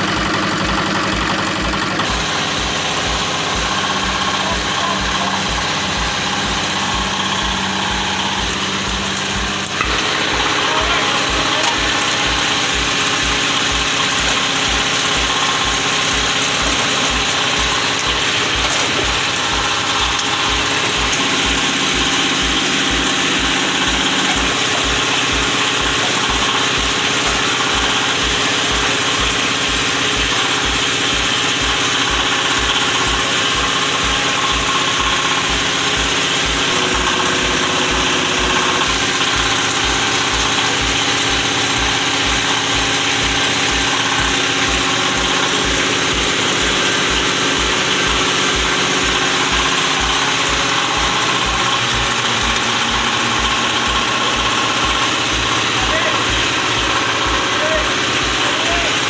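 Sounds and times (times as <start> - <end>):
diesel engine running: 0.0 - 59.0
machinery clatter: 0.0 - 59.0.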